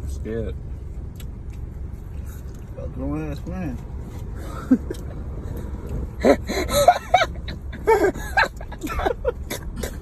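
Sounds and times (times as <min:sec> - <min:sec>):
car cabin rumble: 0:00.0 - 0:10.0
person laughing wheezily: 0:06.2 - 0:10.0.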